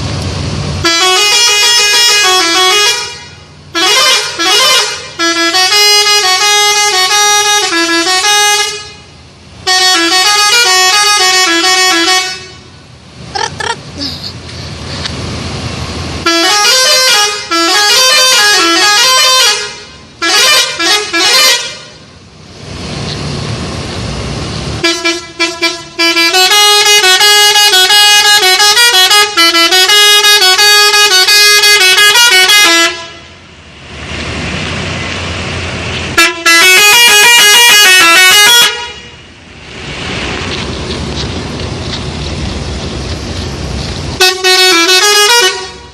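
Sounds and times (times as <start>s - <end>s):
steady road noise: 0.0s - 45.9s
musical air horns playing a tune: 0.8s - 9.1s, 9.7s - 12.7s, 16.2s - 22.0s, 24.8s - 33.4s, 36.2s - 39.2s, 44.2s - 45.9s.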